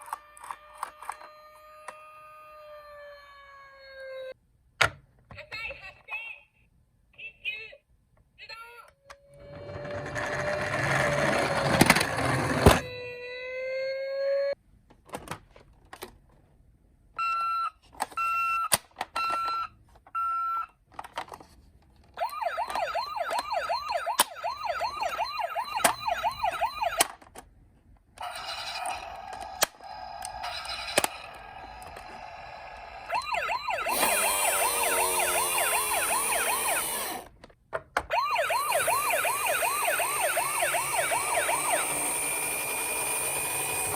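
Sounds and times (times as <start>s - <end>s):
emergency vehicle sirens: 0.0s - 4.4s, 22.2s - 27.1s, 28.2s - 37.3s, 38.1s - 43.9s
wavering siren wail: 0.0s - 4.4s, 22.2s - 27.0s, 29.9s - 37.2s, 38.1s - 43.0s.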